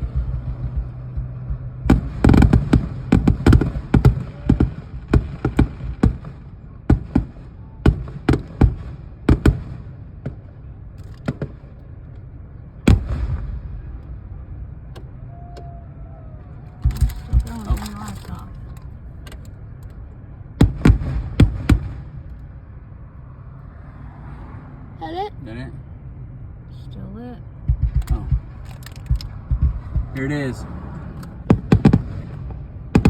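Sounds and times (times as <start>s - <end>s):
fireworks bangs and cracks: 0.0s - 11.8s, 12.9s - 14.3s, 20.6s - 22.3s, 31.3s - 33.0s
low steady hum: 0.0s - 24.2s.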